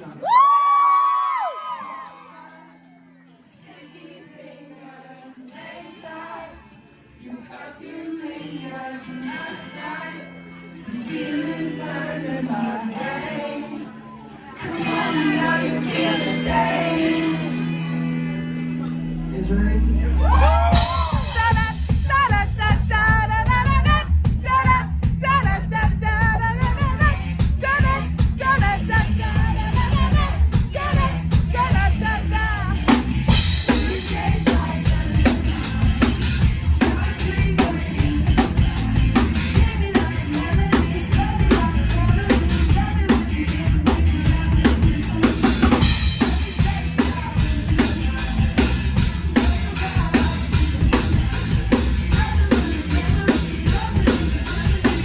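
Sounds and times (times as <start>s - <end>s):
rock band playing loudly: 14.6s - 19.4s, 20.2s - 55.0s
bass drum and snare beat: 20.7s - 31.6s.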